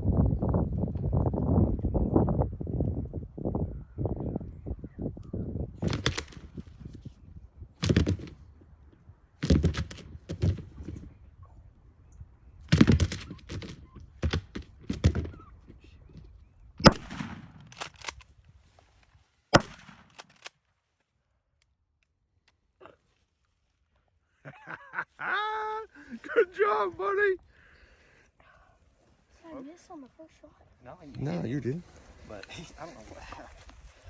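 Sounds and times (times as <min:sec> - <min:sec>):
dull thumps: 0:07.8 - 0:08.4, 0:09.4 - 0:11.2, 0:12.7 - 0:15.5
shotgun shots with echo: 0:16.8 - 0:17.7, 0:19.6 - 0:20.2
rustling: 0:28.9 - 0:34.0.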